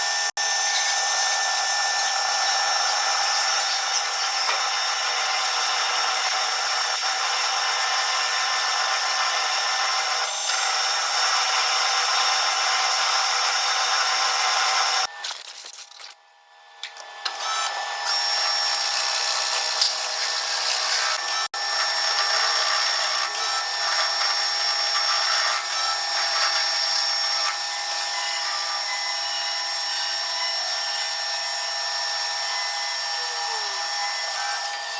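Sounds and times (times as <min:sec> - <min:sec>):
metal lathe machining whine: 0:00.0 - 0:15.2, 0:17.2 - 0:34.9.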